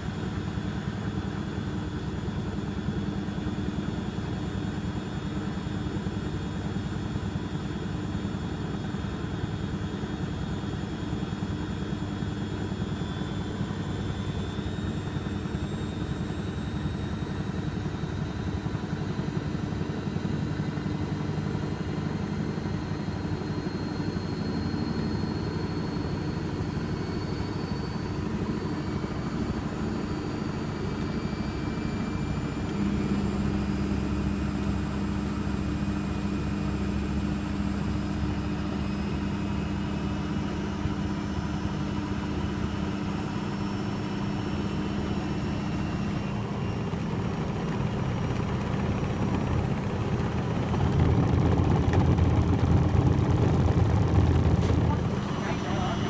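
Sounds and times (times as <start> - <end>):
motor whine: 4.1 - 56.0
washing machine drum spinning: 48.0 - 55.2.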